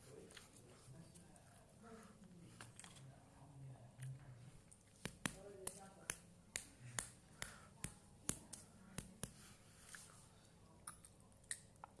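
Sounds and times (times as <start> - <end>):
mouth clicks and smacks chewing: 10.8 - 12.0.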